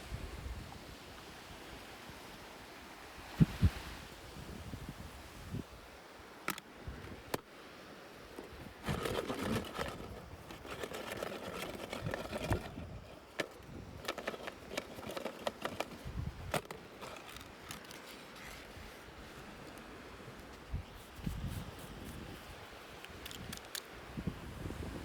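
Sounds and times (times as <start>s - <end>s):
plastic clicking on plastic: 6.4s - 7.4s, 8.4s - 18.6s, 23.0s - 23.9s
plastic packaging rustling: 8.4s - 19.0s.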